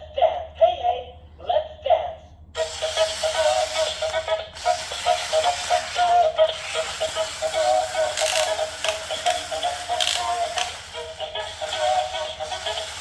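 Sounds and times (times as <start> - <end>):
electronic music from toy speaker: 2.6 - 13.0
mechanical rattle: 2.6 - 13.0.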